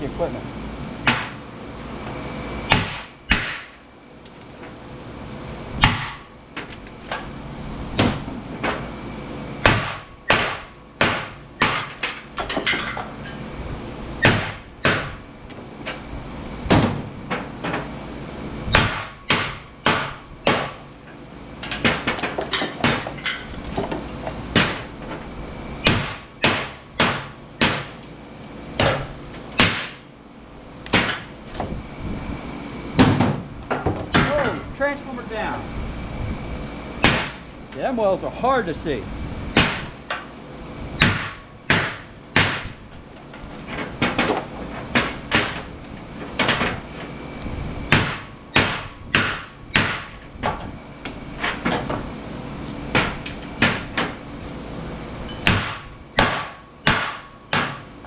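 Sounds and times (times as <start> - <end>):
hammer striking steel: 2.7 - 3.8, 5.8 - 6.3, 9.6 - 13.0, 18.7 - 20.8, 25.8 - 28.0, 41.0 - 42.7, 55.3 - 57.8.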